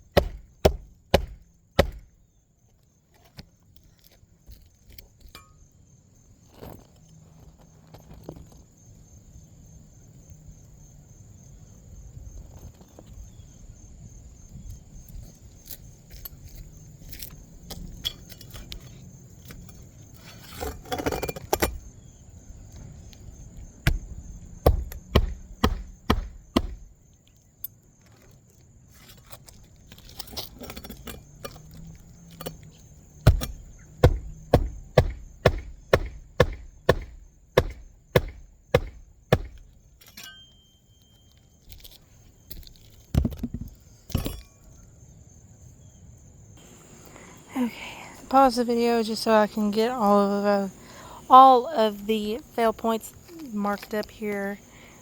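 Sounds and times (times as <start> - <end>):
hammer blows on roof shingle: 0.0 - 2.2, 23.8 - 26.9, 33.2 - 39.8.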